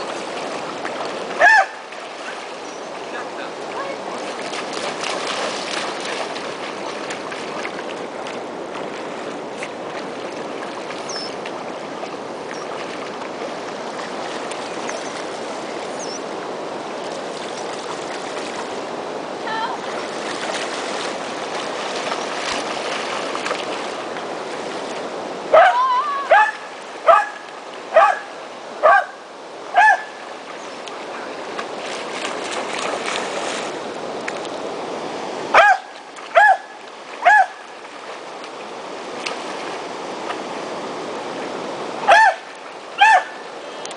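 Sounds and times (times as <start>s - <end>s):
waterfall rushing: 0.0s - 7.0s, 17.9s - 27.2s.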